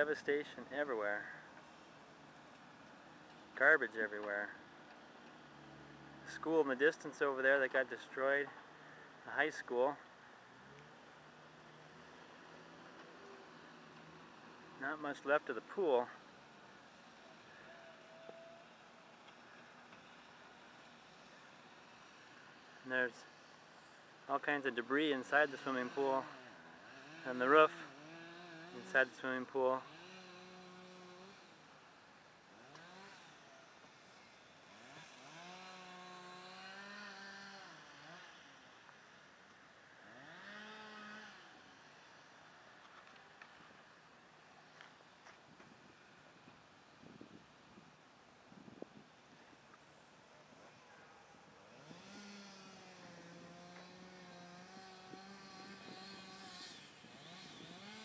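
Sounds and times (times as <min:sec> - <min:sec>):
small engine revving: 0:10.6 - 0:24.0, 0:24.7 - 0:31.9, 0:32.5 - 0:39.2, 0:39.9 - 0:43.7, 0:49.7 - 0:58.0.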